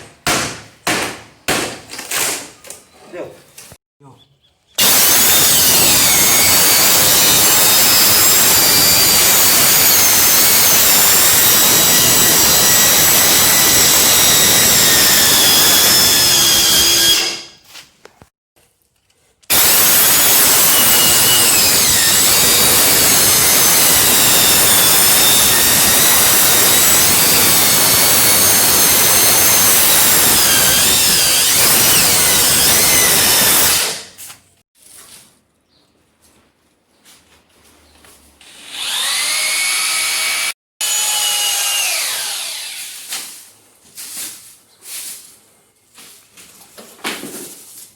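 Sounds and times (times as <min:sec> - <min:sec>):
power tool whining: 0:04.8 - 0:17.6, 0:19.5 - 0:34.1, 0:38.4 - 0:43.1.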